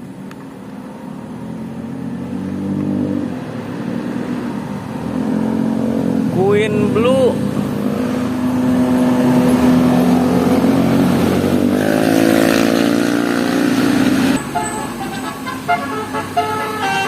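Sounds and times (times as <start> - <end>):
bus engine droning: 3.4 - 17.0
bus horn playing short notes: 14.4 - 17.0.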